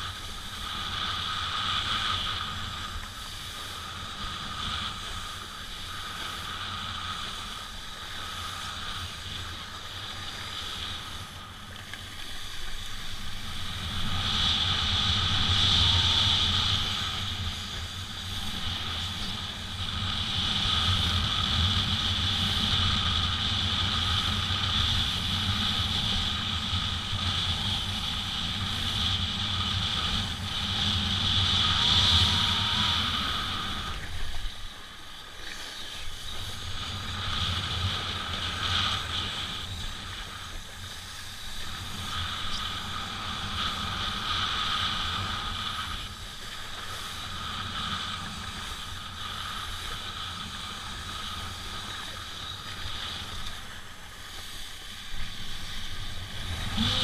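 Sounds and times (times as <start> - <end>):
water rushing under board: 0.0 - 57.0
wind rushing over microphone: 0.0 - 57.0.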